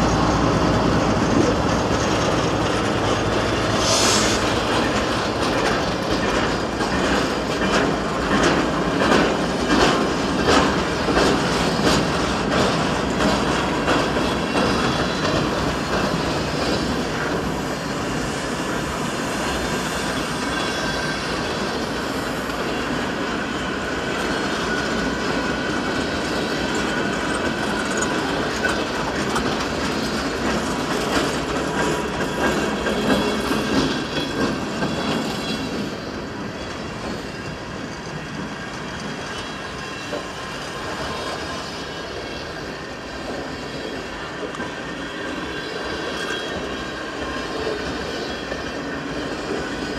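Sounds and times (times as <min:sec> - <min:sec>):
freight train rolling past: 0:00.0 - 0:49.9
steel wheels squealing: 0:00.0 - 0:49.9
wheels clicking over rail joints: 0:04.4 - 0:17.6.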